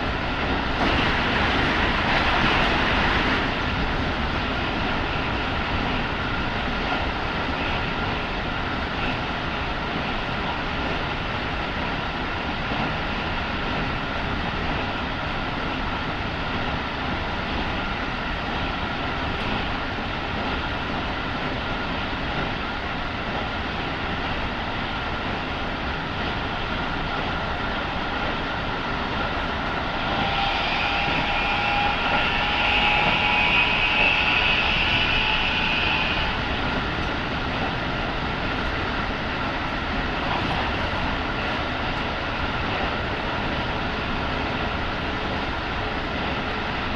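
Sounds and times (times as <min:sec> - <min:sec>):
train wheels rumbling on rail: 0:00.0 - 0:46.9
constant whine: 0:25.2 - 0:46.9
shrill squeal: 0:29.9 - 0:36.5.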